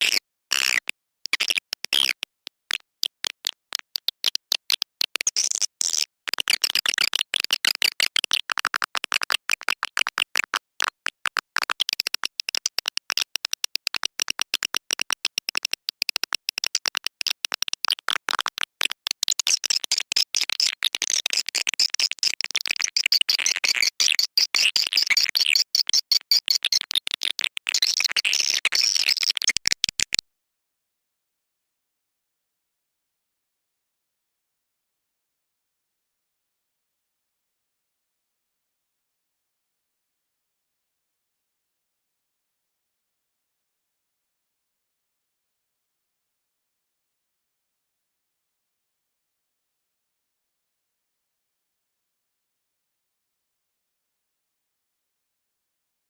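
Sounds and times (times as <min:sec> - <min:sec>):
swiftlets twittering and clicking: 0:11.0 - 0:30.2.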